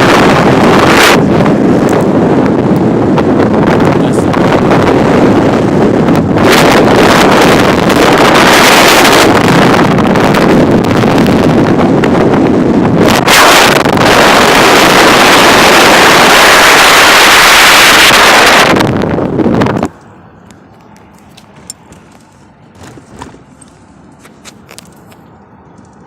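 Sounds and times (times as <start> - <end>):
car road noise: 0.0 - 26.0
wind rushing over microphone: 0.0 - 26.0.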